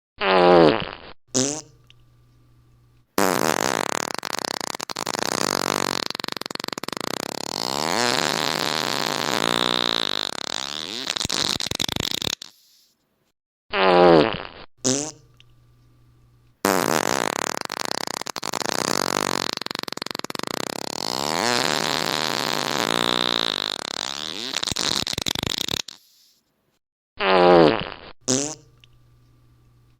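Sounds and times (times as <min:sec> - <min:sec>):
fart sound effects: 0:00.2 - 0:01.8, 0:03.2 - 0:12.7, 0:13.7 - 0:15.3, 0:16.6 - 0:26.1, 0:27.2 - 0:28.8.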